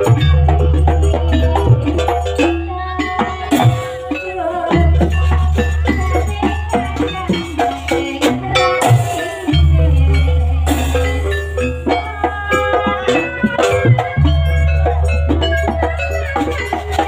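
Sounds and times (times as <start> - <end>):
struck pitched percussion and drums: 0.0 - 17.0.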